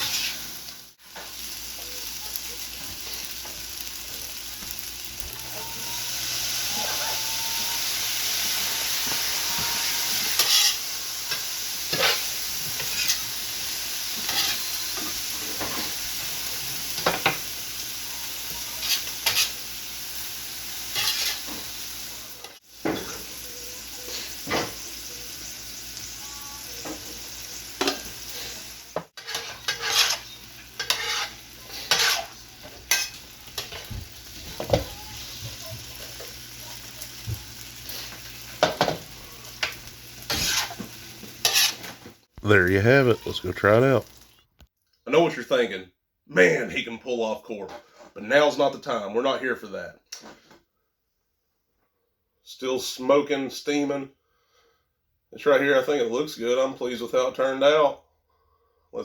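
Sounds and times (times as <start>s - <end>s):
spatula scraping griddle: 0.0s - 2.0s, 4.6s - 17.4s, 18.4s - 19.8s, 20.7s - 21.8s, 26.8s - 37.1s, 37.8s - 42.2s
food sizzling on griddle: 0.0s - 44.4s.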